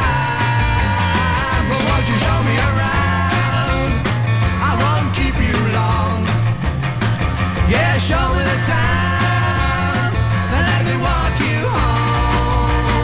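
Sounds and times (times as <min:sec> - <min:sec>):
beat group record playing: 0:00.0 - 0:13.0
steady bass line: 0:00.0 - 0:13.0.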